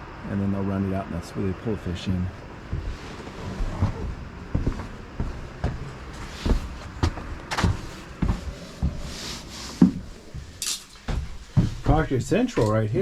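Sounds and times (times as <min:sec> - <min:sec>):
footsteps on boat deck: 0:02.6 - 0:12.8.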